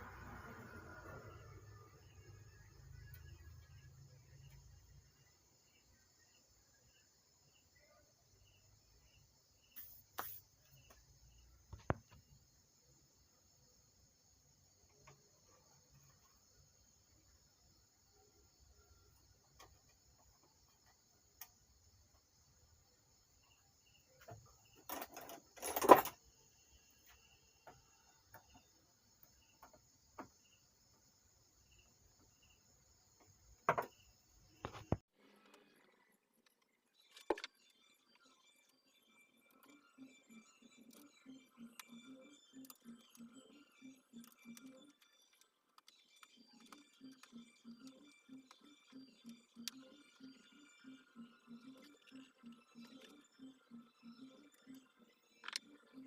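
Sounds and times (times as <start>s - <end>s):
faint high chirps: 0.0s - 56.0s
circuit board scraping: 9.7s - 10.7s
parts clicking and knocking: 24.2s - 30.6s, 33.2s - 56.0s.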